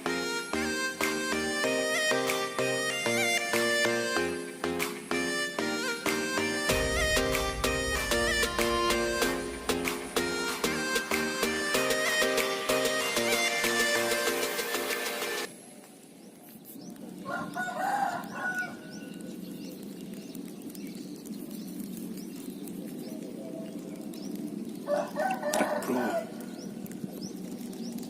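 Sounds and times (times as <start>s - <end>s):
rooster crowing: 17.2s - 19.1s, 24.9s - 26.6s.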